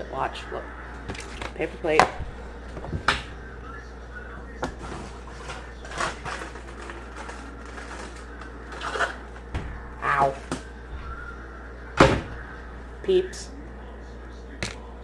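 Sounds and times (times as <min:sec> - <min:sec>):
steady low hum: 0:00.0 - 0:15.0
paper and packaging rustling: 0:04.7 - 0:09.5.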